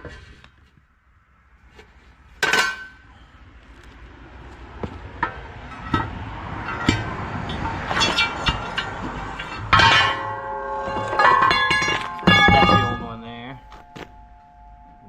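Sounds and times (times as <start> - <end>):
metal parts clinking and knocking: 2.4 - 3.0, 5.2 - 10.3, 10.9 - 14.0
ringing metal clank: 2.4 - 3.1, 4.8 - 15.0.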